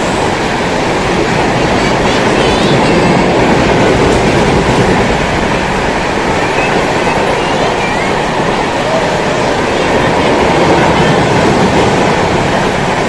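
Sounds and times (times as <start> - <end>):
train wheels rumbling and rattling: 0.0 - 13.0.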